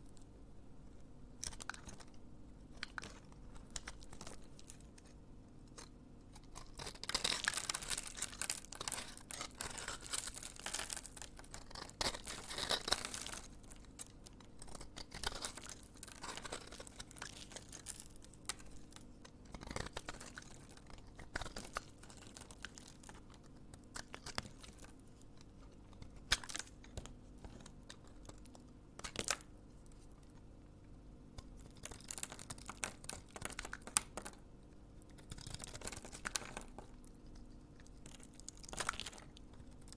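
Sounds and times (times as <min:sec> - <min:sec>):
knife crunching through soap: 0:05.7 - 0:25.1, 0:35.0 - 0:39.9.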